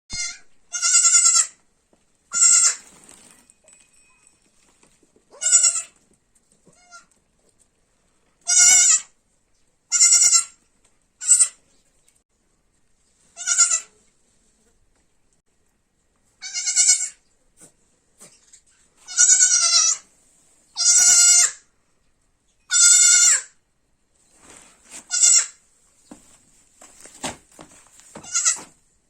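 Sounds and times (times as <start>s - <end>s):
baby goat bleating: 0.1s - 1.6s, 2.3s - 2.8s, 5.3s - 6.0s, 6.7s - 7.1s, 8.4s - 9.1s, 9.9s - 10.6s, 11.2s - 11.6s, 13.4s - 13.9s, 16.4s - 17.2s, 19.0s - 20.0s, 20.8s - 21.6s, 22.7s - 23.5s, 25.1s - 25.6s, 28.2s - 28.7s.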